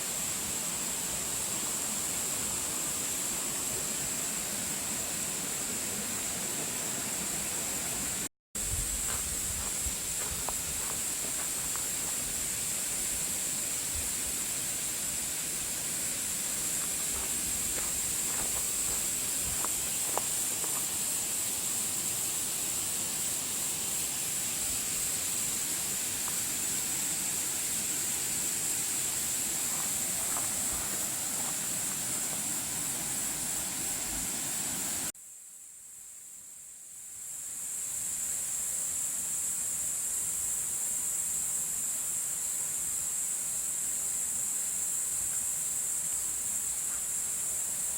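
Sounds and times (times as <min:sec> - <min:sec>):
stream rushing: 0:00.0 - 0:35.1.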